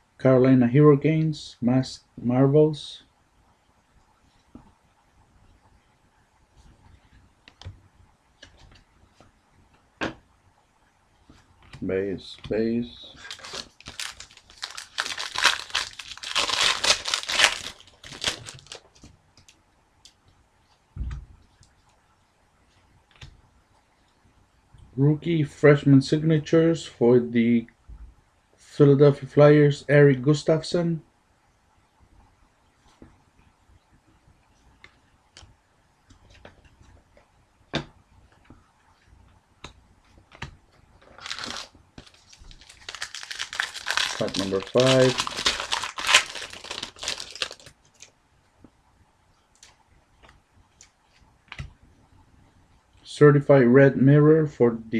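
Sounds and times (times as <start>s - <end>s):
foil wrapper tearing and crinkling: 13.2s - 18.9s, 41.2s - 48.1s
soft thump: 21.0s - 21.4s.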